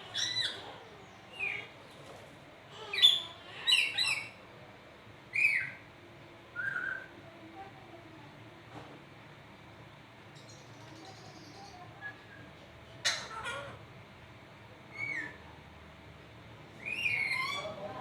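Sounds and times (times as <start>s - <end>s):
parrot chirping calls: 0.1s - 1.7s, 2.7s - 4.4s, 14.9s - 15.4s, 16.8s - 17.8s.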